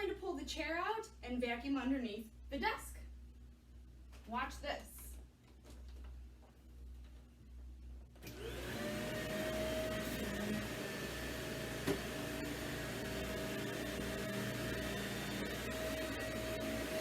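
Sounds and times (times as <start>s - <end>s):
vacuum cleaner motor whining: 8.2s - 17.0s.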